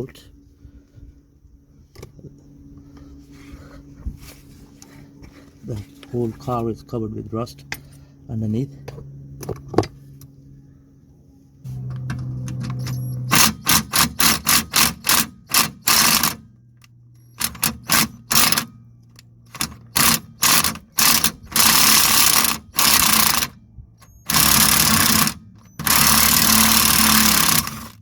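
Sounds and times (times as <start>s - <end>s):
impact wrench hammering: 13.3s - 16.4s, 17.4s - 18.7s, 19.5s - 23.5s, 24.3s - 27.9s.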